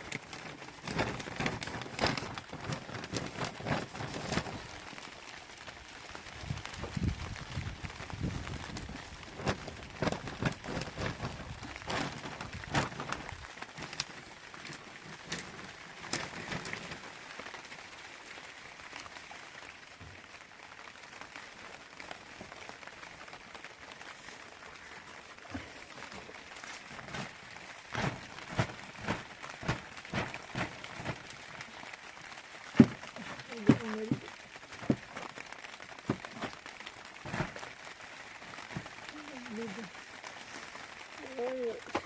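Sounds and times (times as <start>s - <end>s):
rain hiss: 0.0s - 42.0s
knocks and thumps: 32.8s - 35.4s.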